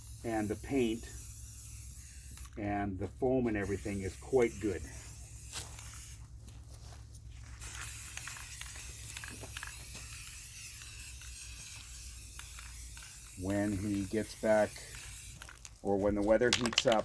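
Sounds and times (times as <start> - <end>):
aerosol spray can hissing: 0.0 - 6.2, 7.5 - 17.0
steady low hum: 0.0 - 17.0
small clicks: 7.7 - 14.2, 14.8 - 17.0.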